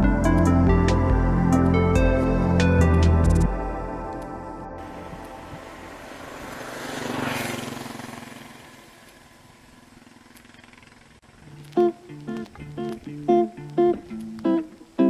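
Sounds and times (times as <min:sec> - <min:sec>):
vehicle passing by: 0:04.8 - 0:11.0.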